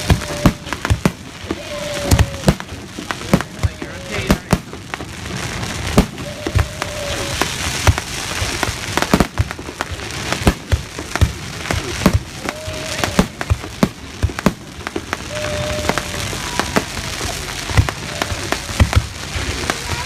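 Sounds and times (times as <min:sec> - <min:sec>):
crackling sparks: 0:00.0 - 0:20.0
firework bangs: 0:00.0 - 0:20.0.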